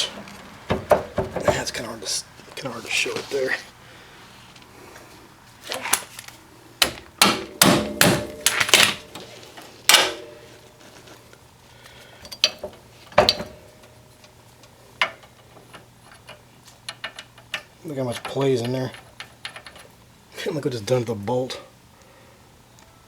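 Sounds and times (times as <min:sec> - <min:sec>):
metal bolt clanking and knocking: 0:00.0 - 0:01.8, 0:12.2 - 0:14.0, 0:15.0 - 0:20.0.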